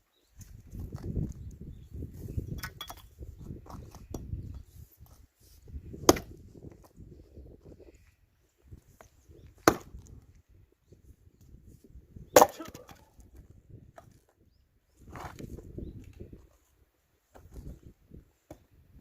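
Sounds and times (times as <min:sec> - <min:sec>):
axe chopping firewood: 0:06.0 - 0:06.4, 0:09.6 - 0:10.2, 0:12.3 - 0:13.1.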